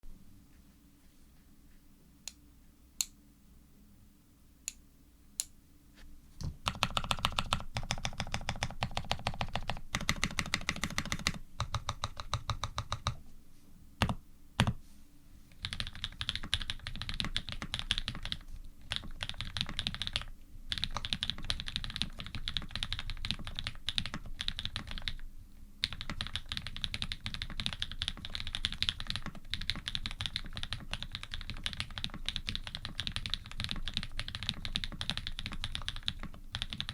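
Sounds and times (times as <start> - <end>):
mechanical keyboard typing: 6.6 - 13.2, 15.6 - 25.2, 25.8 - 36.9.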